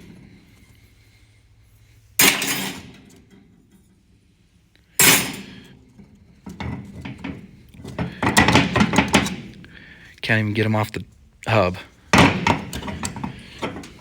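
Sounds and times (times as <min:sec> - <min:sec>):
sharp metal clanks: 0:02.2 - 0:03.1, 0:05.0 - 0:05.7.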